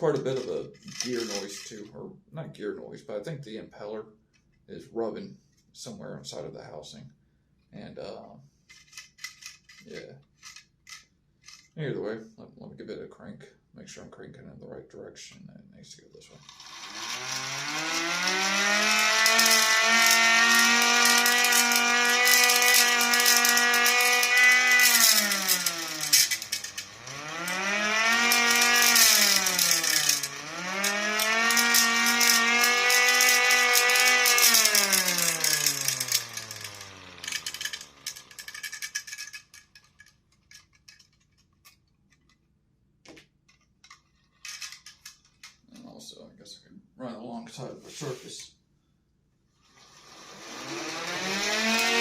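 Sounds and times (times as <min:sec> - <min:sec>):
rattly rubbing noise: 0:00.0 - 0:01.9, 0:16.3 - 0:42.2, 0:43.8 - 0:45.6
hand-cranked siren wailing: 0:17.0 - 0:38.8.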